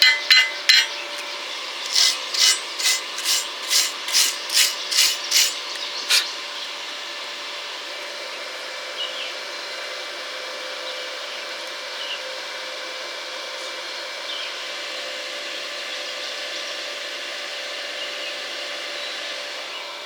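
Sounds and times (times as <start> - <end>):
sharp metallic clinks: 0.0 - 1.0
hand tool scraping metal: 0.0 - 6.3.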